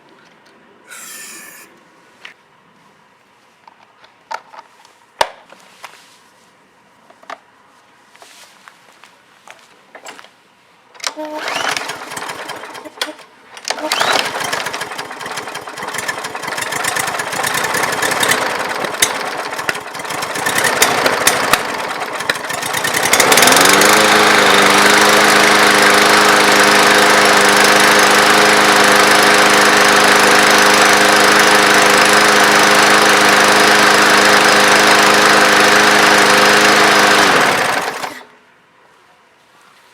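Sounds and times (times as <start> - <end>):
lawn mower engine running: 11.0 - 38.4.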